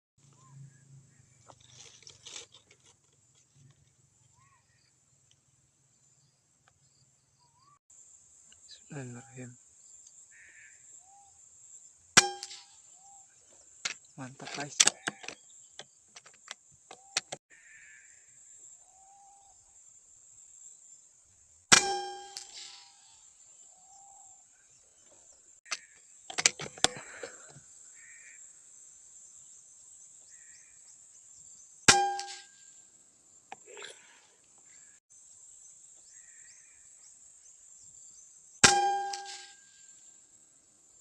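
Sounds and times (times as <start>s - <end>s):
insect drone: 5.9s - 13.9s
sharp metallic crack: 12.2s - 12.8s, 21.7s - 23.2s, 31.9s - 32.6s, 38.6s - 39.8s.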